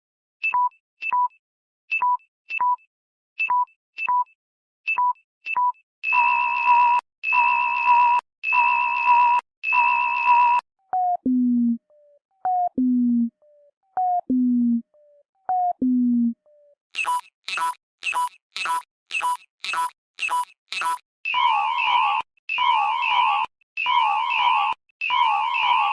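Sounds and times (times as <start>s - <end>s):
phone low-battery warning beeps: 17.0s - 25.9s.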